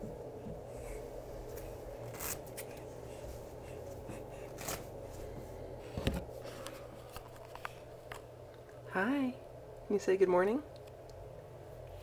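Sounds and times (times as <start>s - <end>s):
soft rustling and handling: 0.0s - 8.7s
steady low hum: 0.0s - 12.0s.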